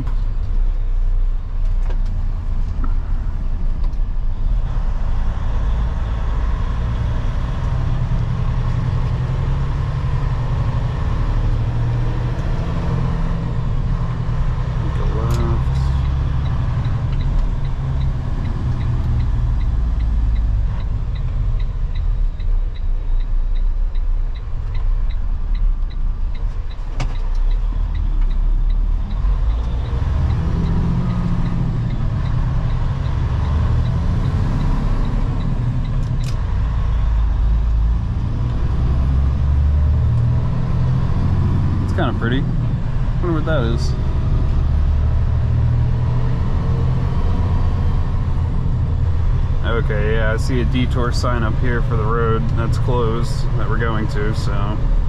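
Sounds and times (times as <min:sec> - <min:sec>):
road noise: 0:00.0 - 0:55.0
truck diesel engine rumble: 0:00.0 - 0:55.0
light regular ticking: 0:13.5 - 0:38.7.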